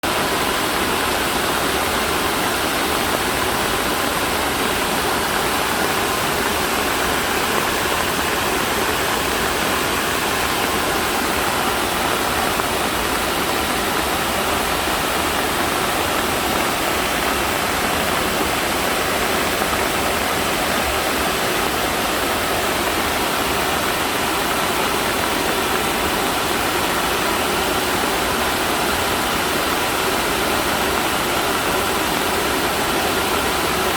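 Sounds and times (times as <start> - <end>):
floodwater roaring: 0.0 - 33.9.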